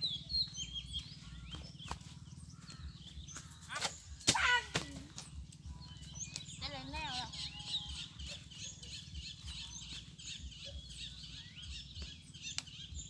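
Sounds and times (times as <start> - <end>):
birds chirping: 0.0 - 13.0
steady low hum: 0.0 - 13.0.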